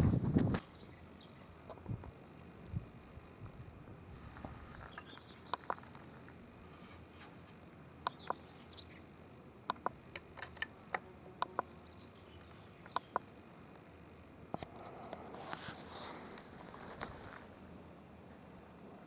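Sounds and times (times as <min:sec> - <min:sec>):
small birds chirping: 0:00.6 - 0:03.0, 0:03.6 - 0:18.4
sharp clicks: 0:04.4 - 0:06.0, 0:08.0 - 0:08.4, 0:09.7 - 0:11.7, 0:12.4 - 0:13.4.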